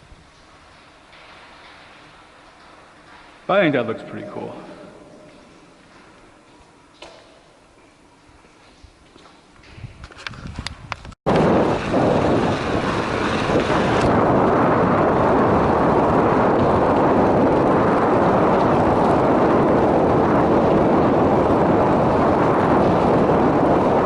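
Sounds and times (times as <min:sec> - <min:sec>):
wind rushing over microphone: 0:03.5 - 0:06.3, 0:09.7 - 0:24.0
bicycle tyres on gravel: 0:11.3 - 0:24.0.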